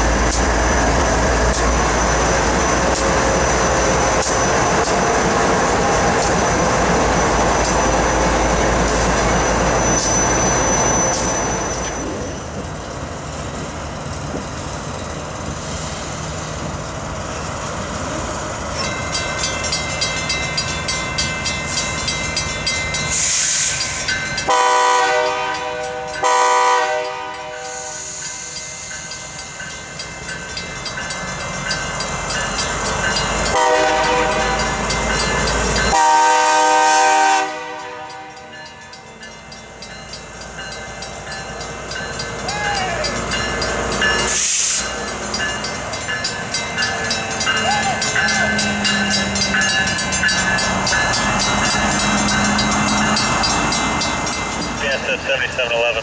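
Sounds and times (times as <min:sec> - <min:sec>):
train rumbling past: 0:00.0 - 0:56.0
diesel locomotive horn blasts: 0:24.4 - 0:28.2, 0:33.5 - 0:34.9, 0:35.9 - 0:39.0.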